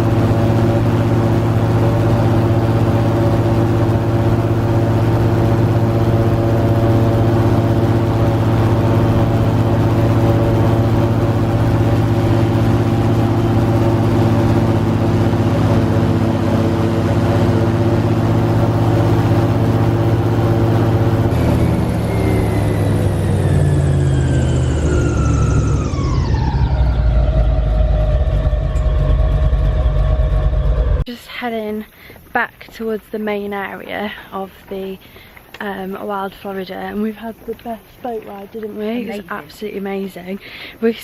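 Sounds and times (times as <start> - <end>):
airboat engine and propeller: 0.0 - 31.1.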